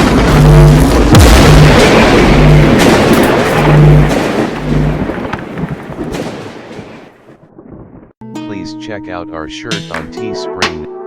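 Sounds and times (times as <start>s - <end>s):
repeating low bass note: 0.0s - 5.1s
crashing explosion-like noise: 0.0s - 8.2s.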